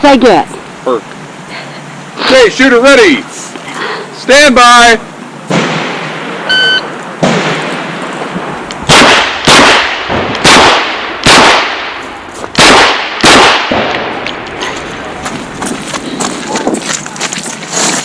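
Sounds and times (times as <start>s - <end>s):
shot timer beep: 6.5s - 6.9s.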